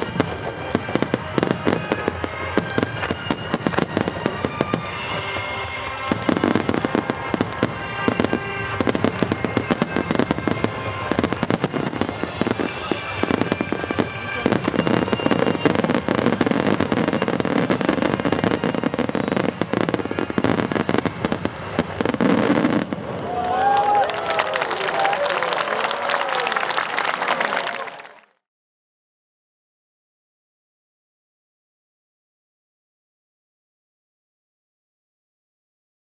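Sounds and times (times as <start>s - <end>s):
music: 0.0s - 23.0s
fireworks bursting and crackling: 0.0s - 27.8s.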